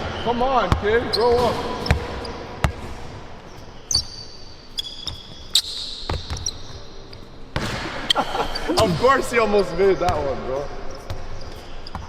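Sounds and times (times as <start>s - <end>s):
sneaker squeaks: 0.0s - 12.0s
basketball bouncing on court: 5.0s - 6.9s, 7.6s - 8.2s.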